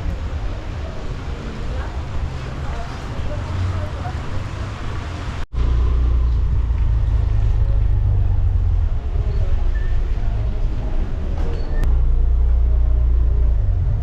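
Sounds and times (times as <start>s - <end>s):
motorcycle engine and road rumble: 0.0s - 14.0s.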